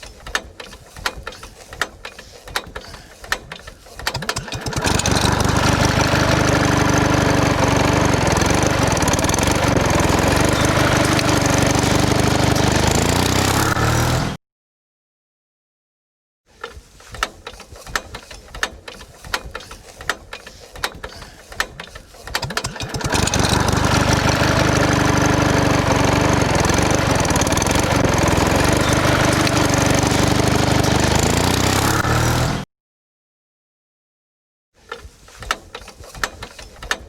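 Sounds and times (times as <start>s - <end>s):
sharp clicks and knocks: 0.0s - 5.9s, 16.6s - 24.1s, 34.9s - 37.0s
small engine running: 0.9s - 14.4s, 20.4s - 32.6s.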